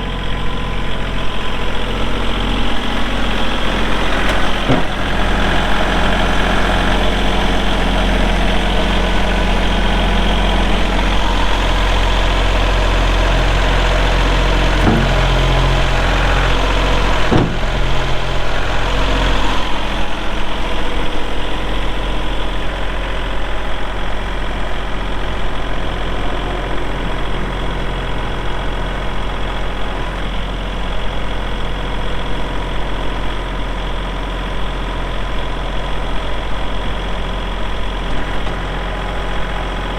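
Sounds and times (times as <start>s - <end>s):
tractor diesel engine running: 0.0s - 39.9s
short clunks: 3.4s - 7.8s, 13.2s - 20.2s.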